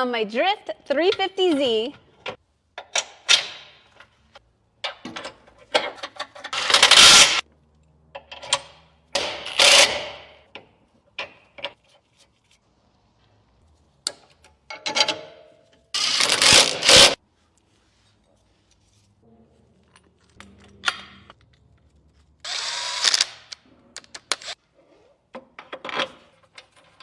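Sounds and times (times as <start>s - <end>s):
metal scraping and rattling: 16.0s - 17.2s.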